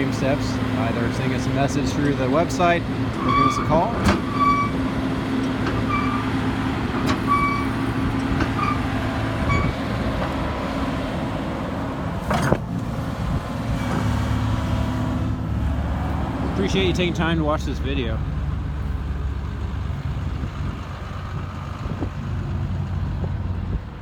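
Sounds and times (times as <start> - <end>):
excavator diesel engine running: 0.0 - 24.0.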